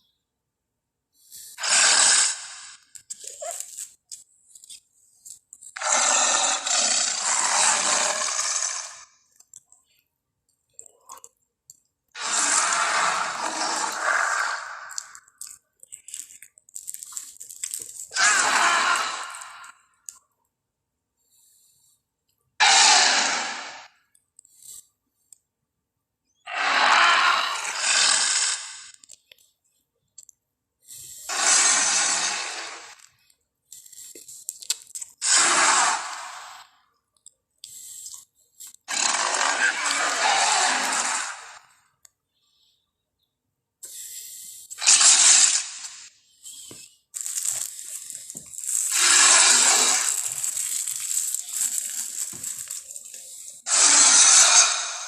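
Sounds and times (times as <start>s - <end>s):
hissing growl: 1.6s - 3.6s, 5.8s - 9.1s, 12.2s - 15.5s, 18.1s - 19.7s, 22.6s - 23.9s, 26.5s - 28.9s, 31.3s - 33.0s, 35.2s - 36.7s, 38.9s - 41.8s, 44.8s - 46.1s, 48.6s - 52.7s, 53.6s - 55.0s
monster growling: 1.6s - 3.6s, 5.8s - 9.1s, 12.2s - 15.2s, 18.1s - 19.7s, 22.6s - 23.9s, 26.5s - 28.9s, 31.3s - 33.0s, 35.2s - 36.7s, 38.9s - 41.7s, 44.8s - 46.1s, 48.8s - 52.6s, 53.6s - 55.0s
wet clicking and crackling: 14.9s - 18.1s.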